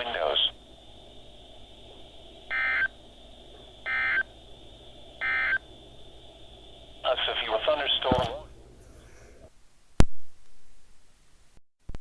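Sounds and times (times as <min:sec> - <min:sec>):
digital data tone bursts: 0:00.0 - 0:08.5
faint high radio whine and hiss: 0:00.0 - 0:12.0.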